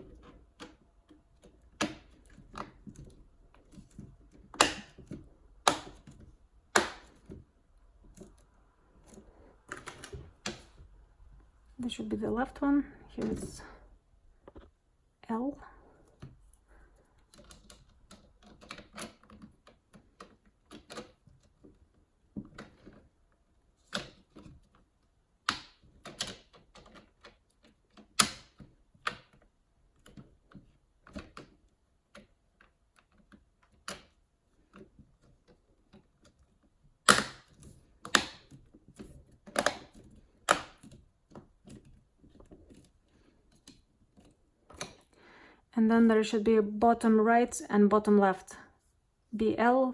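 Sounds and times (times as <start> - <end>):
plastic clicks and knocks: 0.0 - 10.9, 23.8 - 45.1.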